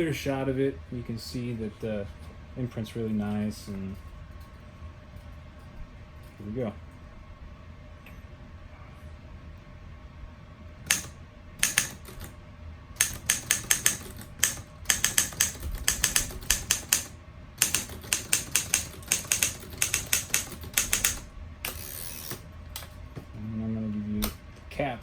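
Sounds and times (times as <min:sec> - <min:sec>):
typewriter keys striking: 0:10.9 - 0:12.3, 0:13.0 - 0:21.8.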